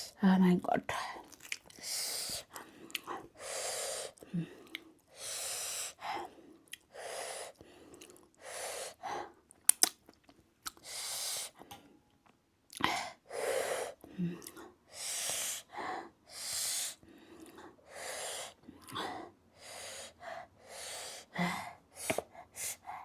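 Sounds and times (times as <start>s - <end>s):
chewing: 1.2s - 1.8s, 2.5s - 3.3s, 9.5s - 10.8s
person breathing hard hissing: 1.8s - 2.5s, 3.4s - 4.2s, 5.1s - 6.0s, 6.9s - 7.6s, 8.4s - 9.0s, 10.8s - 11.6s, 13.2s - 14.0s, 14.9s - 17.0s, 17.8s - 18.6s, 19.6s - 22.9s.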